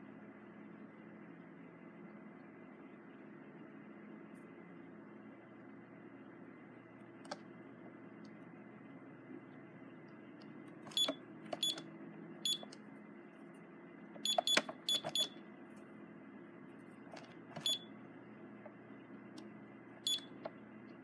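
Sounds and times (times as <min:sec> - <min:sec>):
keypad beeps: 0:10.9 - 0:12.8, 0:14.2 - 0:15.4, 0:17.6 - 0:17.9, 0:20.0 - 0:20.4.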